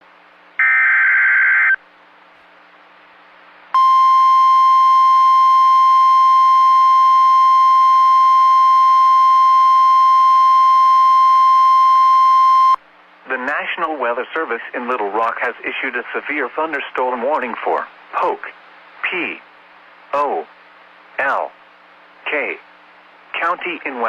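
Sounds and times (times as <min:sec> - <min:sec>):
steady alarm beep: 0:03.8 - 0:12.8.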